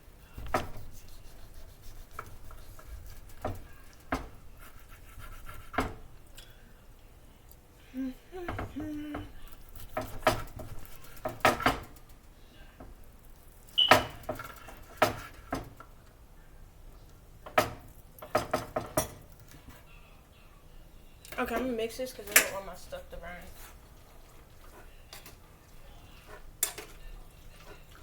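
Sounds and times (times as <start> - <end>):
kitchen utensils and dishes clinking: 17.5 - 19.8, 21.3 - 28.0.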